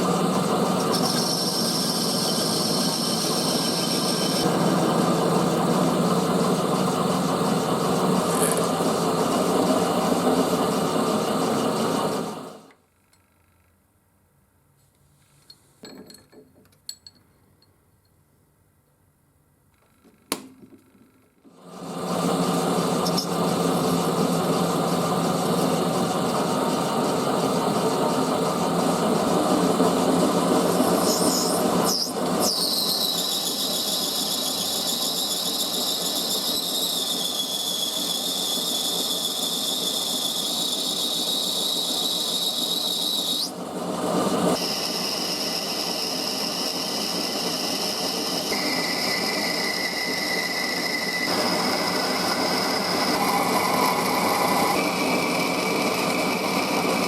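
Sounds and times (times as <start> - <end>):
metal lathe running: 0.0 - 12.6, 21.7 - 57.0
high squeal of cutting tool: 0.1 - 5.4, 22.2 - 26.8, 30.4 - 43.6, 44.6 - 57.0.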